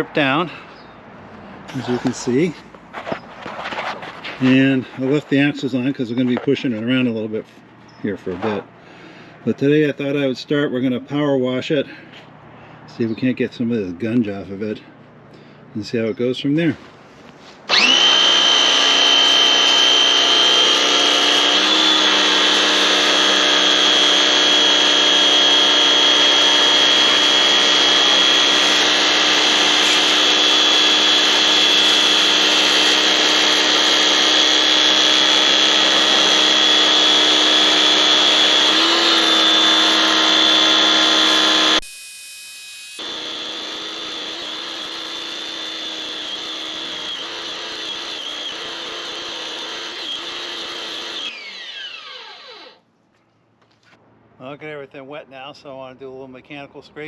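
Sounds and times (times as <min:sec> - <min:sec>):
motor and pump whine: 0:17.7 - 0:52.8.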